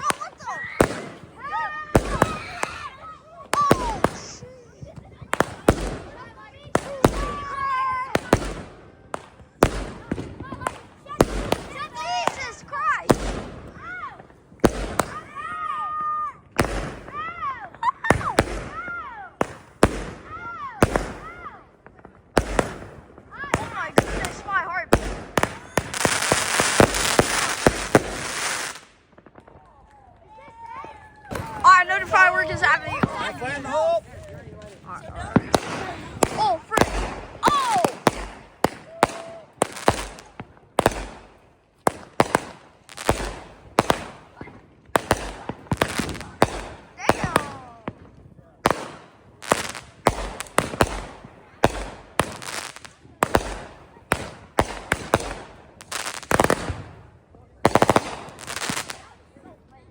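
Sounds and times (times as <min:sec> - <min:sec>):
fireworks whistling: 0:00.0 - 0:06.1, 0:22.4 - 0:29.0
fireworks banging: 0:00.0 - 0:15.5, 0:16.5 - 0:59.2.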